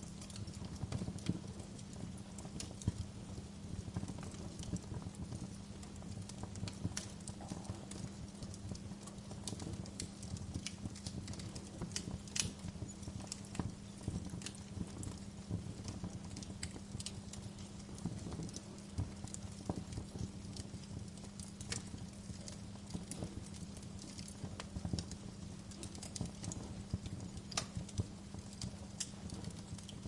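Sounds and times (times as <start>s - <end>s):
wood fire crackling: 0.0s - 30.0s.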